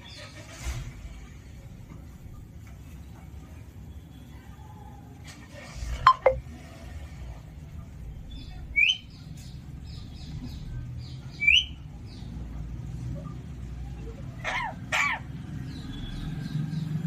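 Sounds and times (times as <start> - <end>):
parakeet calls: 14.4 - 15.4.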